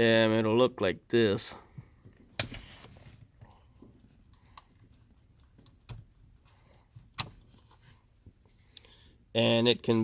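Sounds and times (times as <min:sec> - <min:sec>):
plastic relay rustling in hand: 0:01.6 - 0:08.8.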